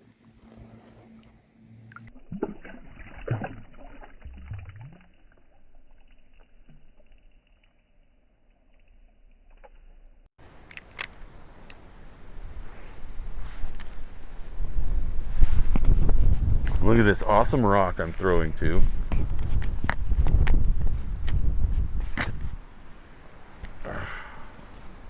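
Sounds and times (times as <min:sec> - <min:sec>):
water sloshing and splashing: 0:00.0 - 0:07.3.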